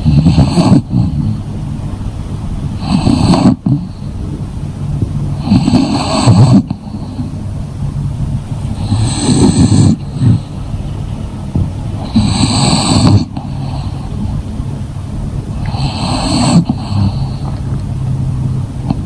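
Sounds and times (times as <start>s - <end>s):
dog snoring: 0.0s - 1.5s, 2.8s - 4.2s, 5.3s - 7.4s, 8.6s - 10.7s, 11.9s - 14.4s, 15.5s - 17.8s
dog breathing: 0.0s - 1.6s, 2.6s - 4.4s, 5.3s - 7.6s, 8.5s - 14.6s, 15.5s - 17.9s, 18.6s - 19.0s.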